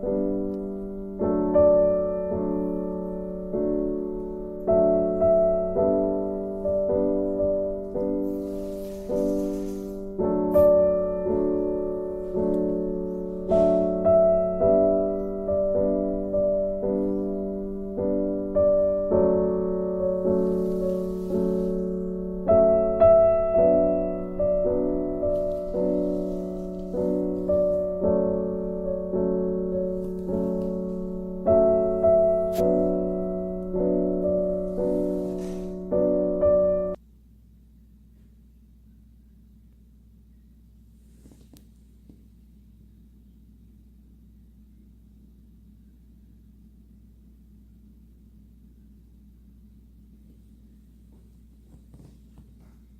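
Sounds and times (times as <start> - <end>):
gentle piano music: 0.0 - 37.0.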